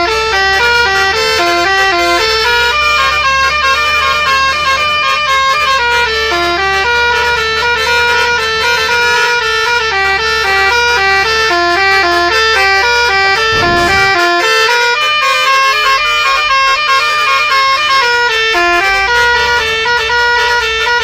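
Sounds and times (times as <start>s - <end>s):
bus air horn playing a tune: 0.0s - 21.0s
bus engine humming: 13.2s - 14.8s.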